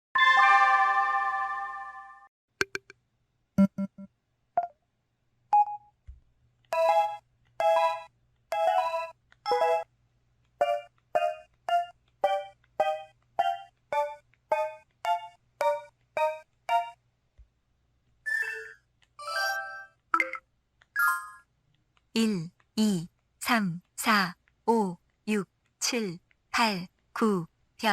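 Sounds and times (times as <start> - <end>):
clicks and short blips: 2.6 - 3.0, 3.6 - 4.8.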